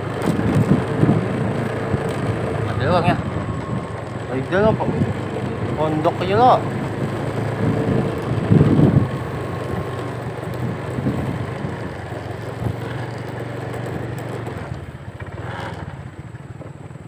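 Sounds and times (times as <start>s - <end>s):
wind on microphone: 0.0s - 13.2s
small engine running: 0.0s - 17.0s.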